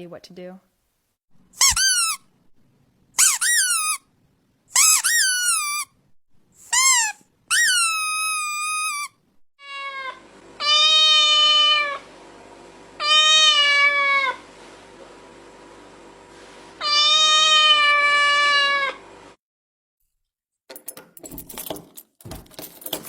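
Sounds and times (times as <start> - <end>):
cat meowing: 9.6 - 12.0, 13.0 - 14.4, 16.8 - 19.0.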